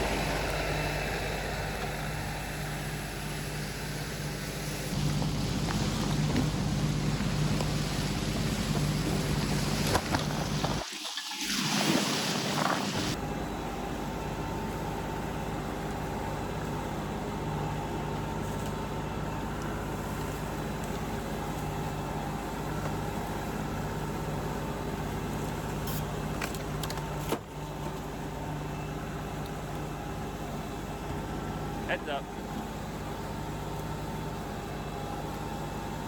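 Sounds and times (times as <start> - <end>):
vehicle engine running: 0.0 - 10.8.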